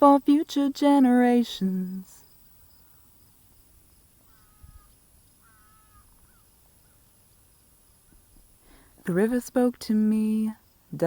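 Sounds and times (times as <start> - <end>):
distant bird calling: 1.3 - 9.1.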